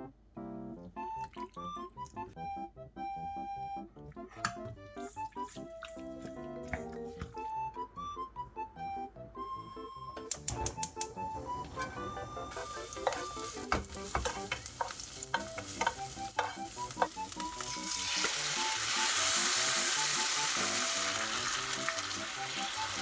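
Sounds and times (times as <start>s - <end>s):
light background music: 0.0s - 23.0s
utensil clicks and knocks: 10.2s - 12.2s
food sizzling in a pan: 11.4s - 23.0s.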